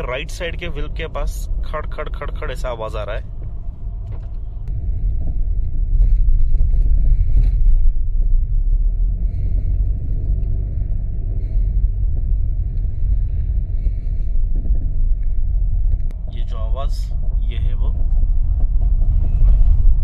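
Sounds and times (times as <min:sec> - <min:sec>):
road noise rumble: 0:00.0 - 0:20.0
suspension rattling knock: 0:13.9 - 0:20.0.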